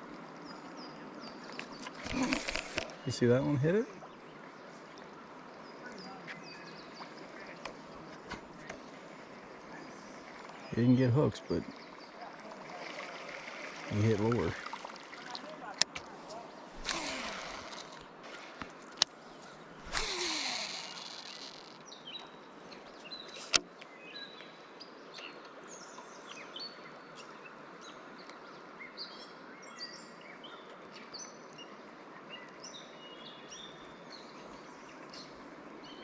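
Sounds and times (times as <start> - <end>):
river water hissing: 0.9 - 23.9
small birds chirping: 15.1 - 36.0.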